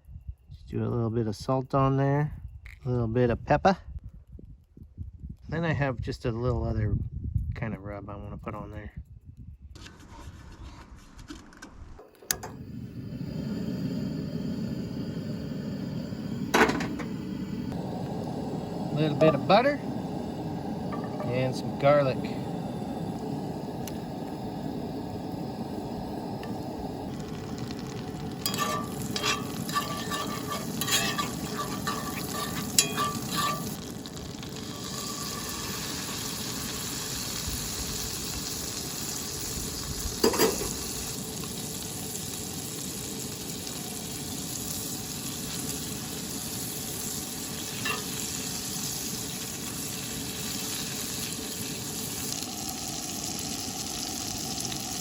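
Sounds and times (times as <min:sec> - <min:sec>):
meat sizzling in a pan: 0:12.6 - 0:55.0
metal clinks and scrapes: 0:28.4 - 0:33.8, 0:47.8 - 0:48.1.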